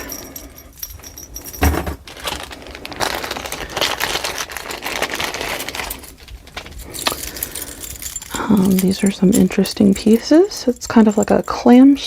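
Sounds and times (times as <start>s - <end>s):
soft thump: 1.6s - 2.0s
packaging crinkling: 1.6s - 10.3s.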